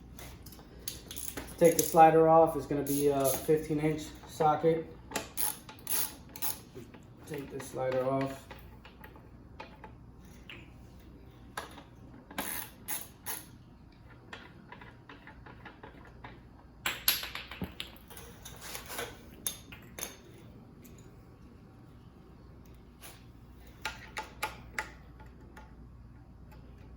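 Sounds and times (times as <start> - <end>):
socket wrench clicking: 5.1 - 6.6.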